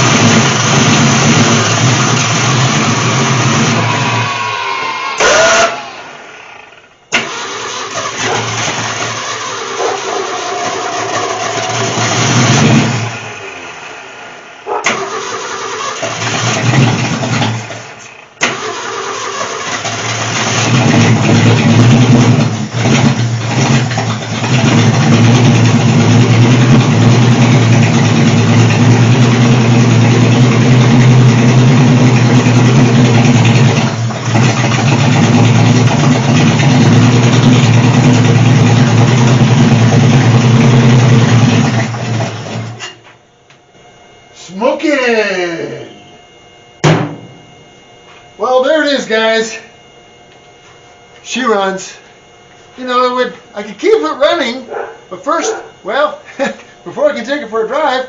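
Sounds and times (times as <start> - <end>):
car engine sputtering and running: 0.0 - 43.1.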